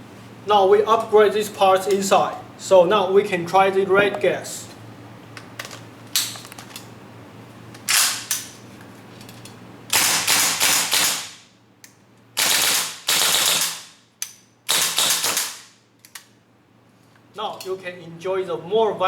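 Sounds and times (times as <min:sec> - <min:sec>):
airsoft rifle shots: 0:09.9 - 0:11.4, 0:12.4 - 0:14.0, 0:14.7 - 0:15.8.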